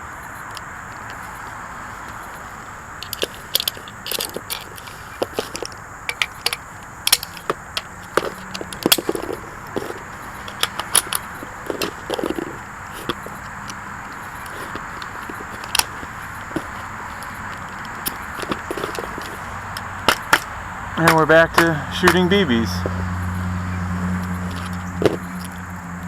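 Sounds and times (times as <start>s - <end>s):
steady hiss: 0.0s - 26.0s
parts clicking and snapping: 0.2s - 25.8s.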